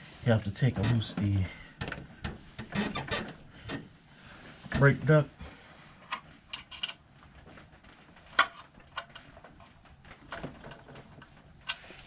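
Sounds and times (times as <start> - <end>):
sharp clicks and light knocks: 0.7 - 3.9, 6.0 - 12.0.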